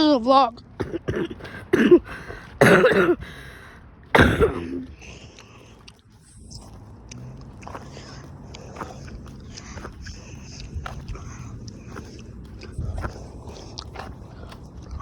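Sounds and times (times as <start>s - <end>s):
boy coughing: 0.6s - 5.4s.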